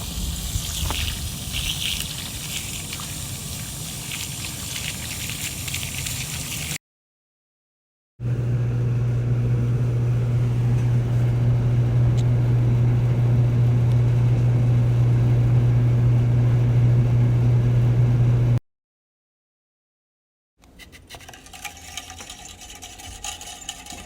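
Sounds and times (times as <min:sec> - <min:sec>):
low mechanical hum: 0:08.2 - 0:18.6.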